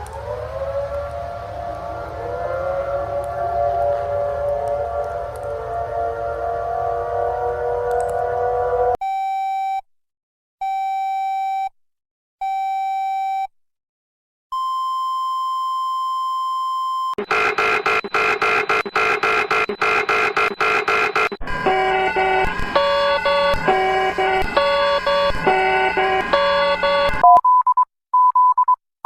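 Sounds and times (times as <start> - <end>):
fast pulsing alarm: 0.0 - 9.0, 17.2 - 27.2
steady high tone: 0.0 - 9.0, 17.2 - 27.2
electronic beeps: 14.6 - 28.8.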